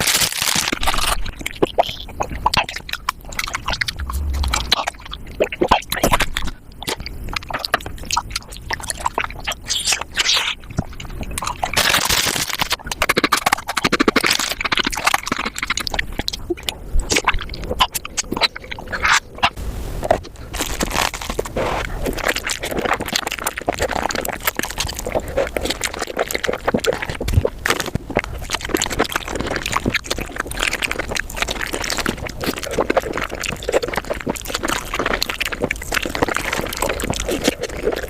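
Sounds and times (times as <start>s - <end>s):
sped-up crunching and chewing: 0.0s - 38.0s.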